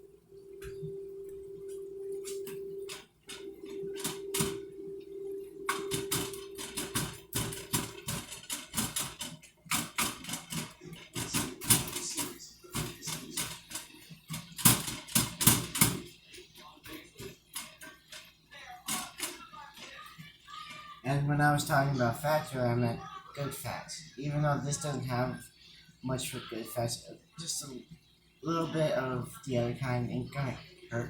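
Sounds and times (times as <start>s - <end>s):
steady hum: 0.0s - 22.8s
utensil tapping and scraping pans: 5.6s - 21.0s.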